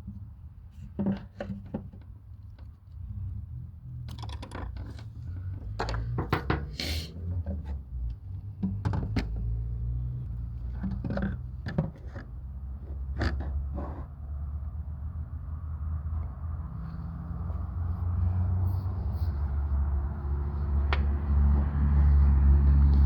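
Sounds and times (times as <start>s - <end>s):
hand tools knocking and clunking: 4.1s - 6.8s, 8.4s - 9.6s, 10.6s - 12.4s.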